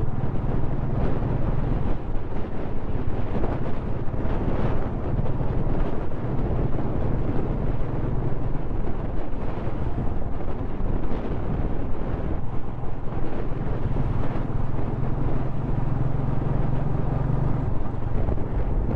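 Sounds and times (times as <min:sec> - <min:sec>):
wind on microphone: 0:00.0 - 0:18.9
engine drone: 0:11.5 - 0:18.9.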